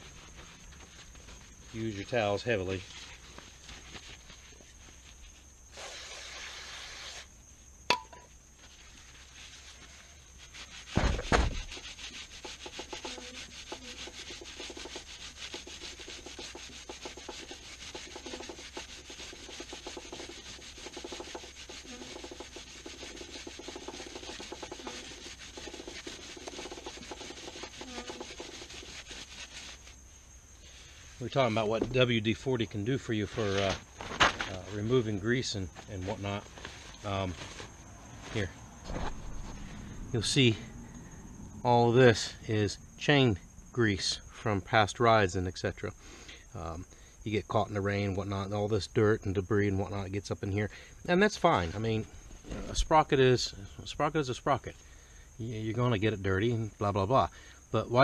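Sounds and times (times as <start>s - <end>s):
towel rubbing along chain: 0.0s - 7.3s, 8.6s - 30.0s, 34.5s - 39.6s
short hiss: 5.7s - 7.4s
thump: 10.9s - 11.8s, 38.8s - 39.7s.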